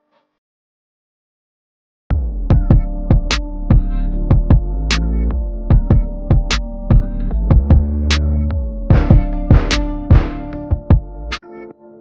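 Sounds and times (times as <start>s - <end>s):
steady drum beat: 2.5s - 4.7s, 5.7s - 8.0s, 8.9s - 11.1s.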